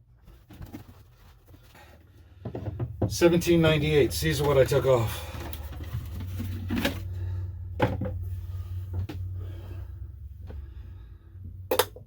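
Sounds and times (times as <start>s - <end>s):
steady low hum: 0.1s - 12.0s
knocks of things being handled: 2.4s - 3.3s.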